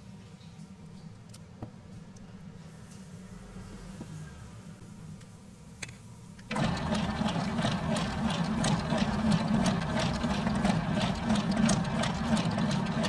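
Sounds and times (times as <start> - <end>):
machine humming and clattering: 6.5 - 13.0.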